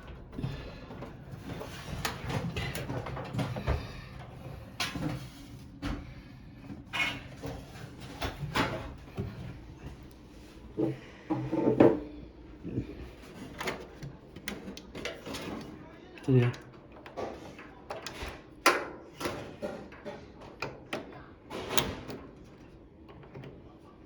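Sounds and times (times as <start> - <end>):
knocks and clunks on a dryer: 0.0 - 10.0.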